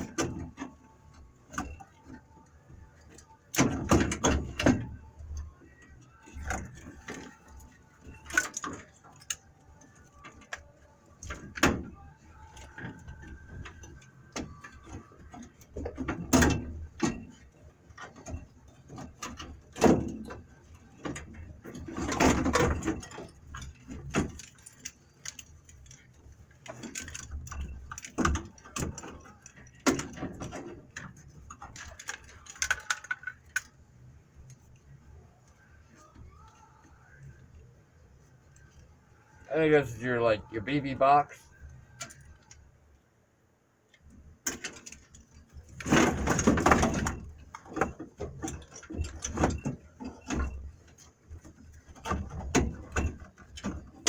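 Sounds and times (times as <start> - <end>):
clunks and knocks: 0.0 - 42.6, 44.0 - 54.0
wiring harness rustling: 0.0 - 43.0.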